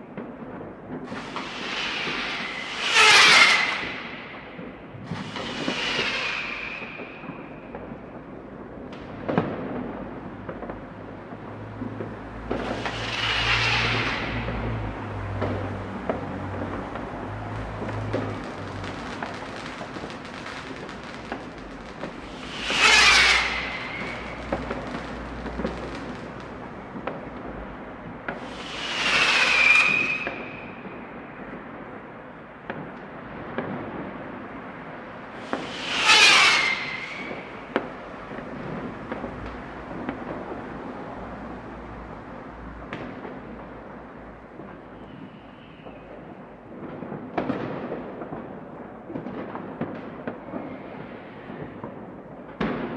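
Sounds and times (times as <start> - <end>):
hissing whistling rocket: 1.0 - 8.3, 12.0 - 27.6, 28.2 - 31.5, 35.2 - 40.8, 44.7 - 46.4, 50.3 - 51.8
sharp firework bang: 1.0 - 8.4, 11.8 - 27.5, 28.2 - 31.8, 35.4 - 40.7
rumble of far-off explosions: 3.7 - 52.9.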